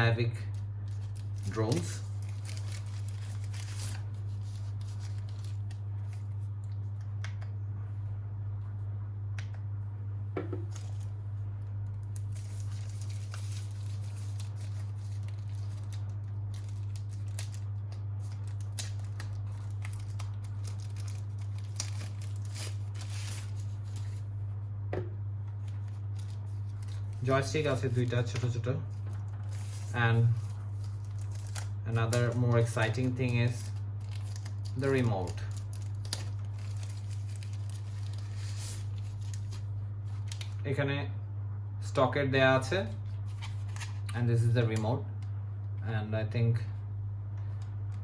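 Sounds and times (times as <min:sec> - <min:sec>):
steady low hum: 0:00.0 - 0:48.0
packaging rustling and crinkling: 0:00.5 - 0:06.5, 0:10.6 - 0:11.2, 0:12.0 - 0:24.3, 0:25.6 - 0:40.6, 0:43.1 - 0:44.1.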